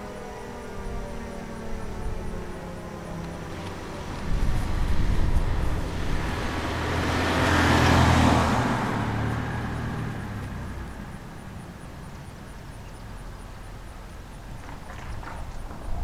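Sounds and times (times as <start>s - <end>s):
vehicle passing by: 1.4s - 13.6s.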